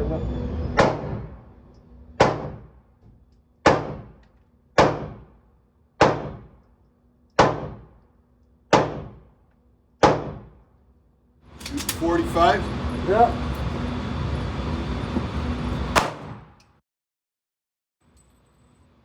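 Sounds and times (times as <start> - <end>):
gunshots: 2.2 - 2.7, 3.6 - 4.2, 4.8 - 5.4, 6.0 - 6.6, 7.4 - 7.9, 8.7 - 9.3, 16.0 - 16.5.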